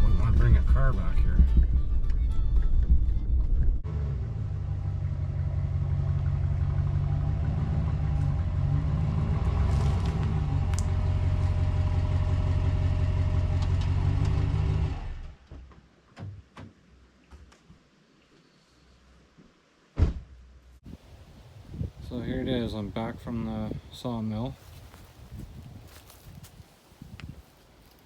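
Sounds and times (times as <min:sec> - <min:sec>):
vehicle engine rumbling: 0:00.0 - 0:15.7.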